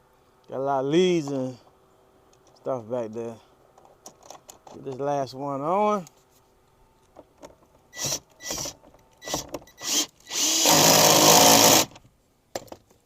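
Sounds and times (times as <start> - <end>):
power drill driving a bolt: 8.0 - 12.0.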